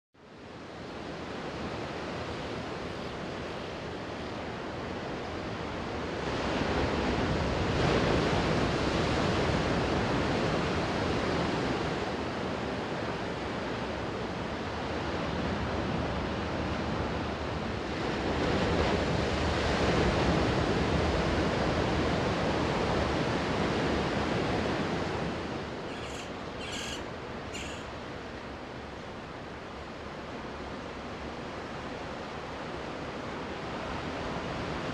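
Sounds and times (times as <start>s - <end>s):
ocean waves breaking: 1.0s - 34.9s
short high chirps: 25.9s - 27.9s.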